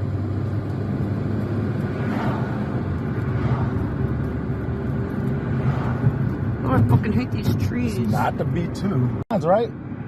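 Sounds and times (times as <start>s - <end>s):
car engine and road hum: 0.0s - 10.0s.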